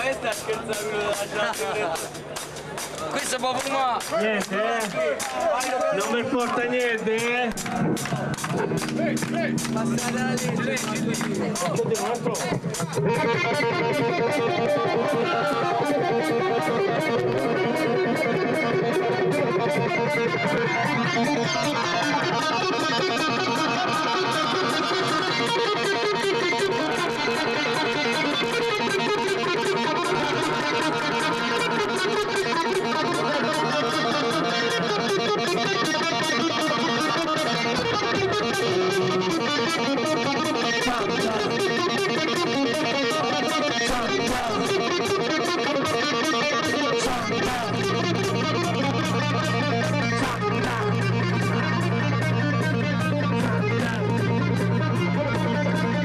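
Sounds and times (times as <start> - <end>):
fast drums: 0.0 - 13.3
distorted electric guitar: 0.0 - 56.0
bass guitar: 7.0 - 56.0.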